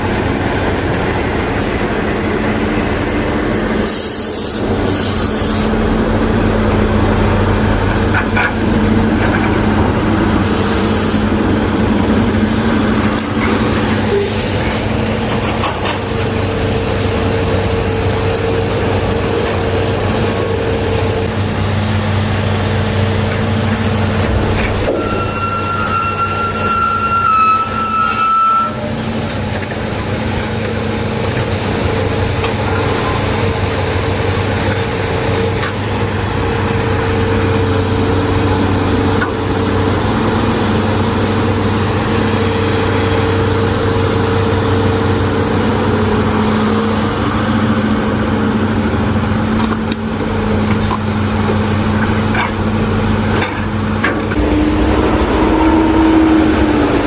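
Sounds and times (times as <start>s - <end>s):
diesel engine running: 0.0s - 57.0s
thin high whine: 24.3s - 30.8s, 54.4s - 57.0s.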